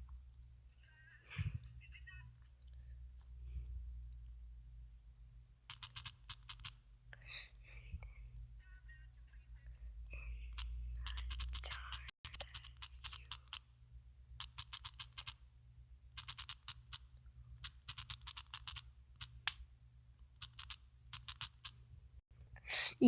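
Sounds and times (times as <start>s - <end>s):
touchscreen keyboard clicks: 5.7s - 6.8s, 10.5s - 13.6s, 14.4s - 15.4s, 16.1s - 19.6s, 20.2s - 21.8s.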